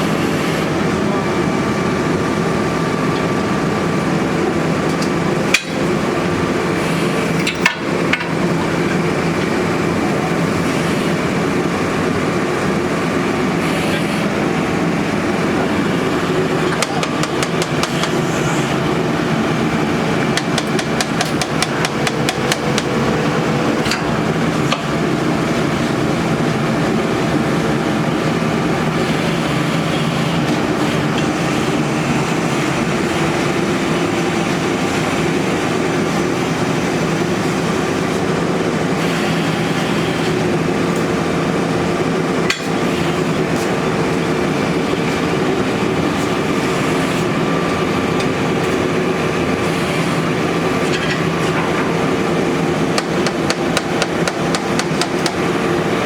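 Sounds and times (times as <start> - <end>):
drilling rig engine running: 0.0 - 56.0
sharp knocks: 20.4 - 23.0, 53.0 - 55.4.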